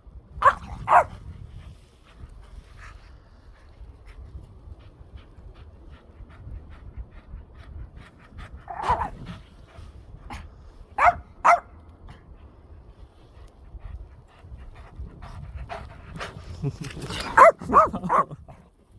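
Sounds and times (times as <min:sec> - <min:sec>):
dog barking sharply: 0:00.4 - 0:01.1, 0:11.0 - 0:11.7, 0:17.3 - 0:18.3
dogs panting: 0:00.4 - 0:18.6
dog growling: 0:17.0 - 0:18.4.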